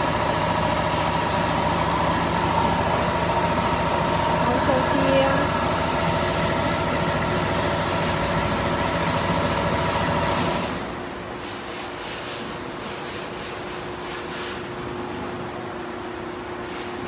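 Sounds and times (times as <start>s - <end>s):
machine hum: 0.0s - 11.4s.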